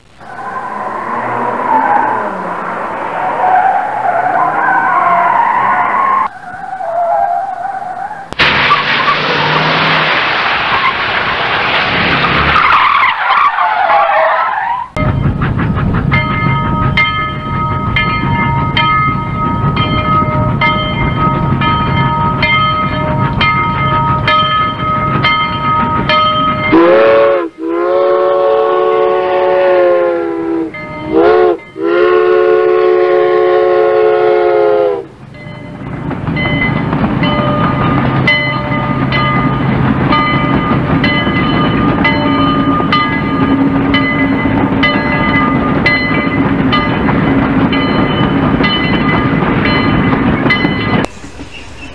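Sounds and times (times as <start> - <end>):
rumble and clatter of passing train: 0.0 - 51.9
warning bell ringing: 16.1 - 27.0, 30.7 - 32.3, 35.3 - 51.2
train horn blasts: 25.9 - 35.2.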